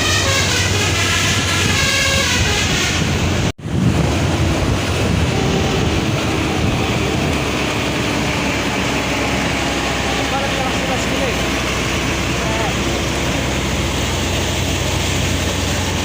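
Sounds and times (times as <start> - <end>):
bus horn playing a tune: 0.0 - 3.5, 5.0 - 10.2
vehicle and wind rumble: 0.0 - 16.0.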